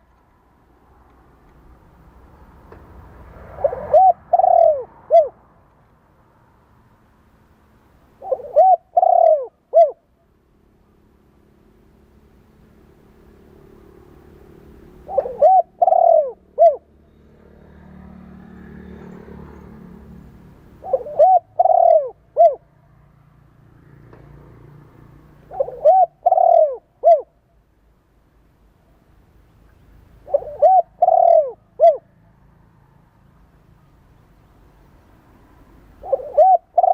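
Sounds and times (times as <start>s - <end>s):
dove cooing: 3.4s - 5.4s, 8.2s - 10.1s, 14.9s - 16.9s, 20.8s - 22.7s, 25.4s - 27.4s, 30.2s - 32.1s, 36.0s - 36.9s.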